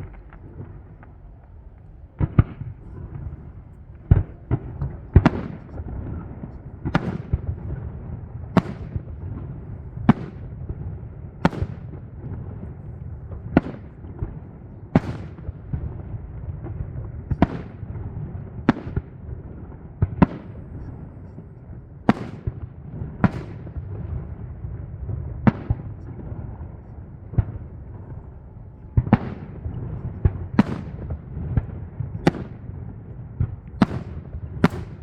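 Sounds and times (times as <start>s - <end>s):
steady low rumble: 0.0s - 11.4s.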